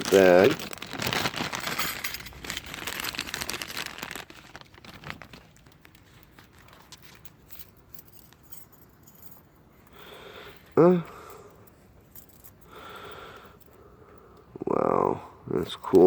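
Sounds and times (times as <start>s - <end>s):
bag crinkling: 0.0s - 9.3s
quiet clicks and rustles: 0.0s - 10.0s.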